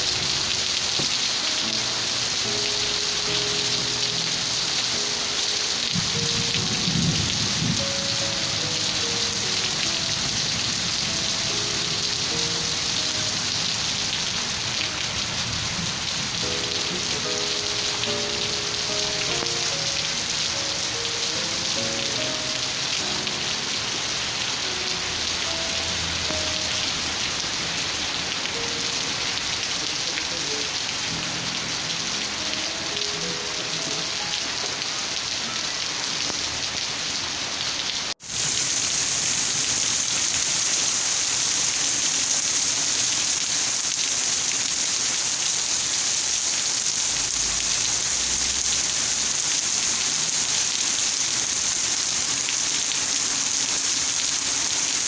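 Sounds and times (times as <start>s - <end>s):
soft low melodic notes: 0.0s - 36.9s
steady rain: 0.0s - 55.0s.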